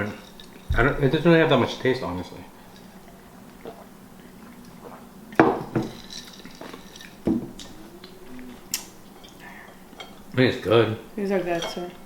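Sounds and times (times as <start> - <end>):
chopsticks and dishes clinking: 9.2 - 12.0.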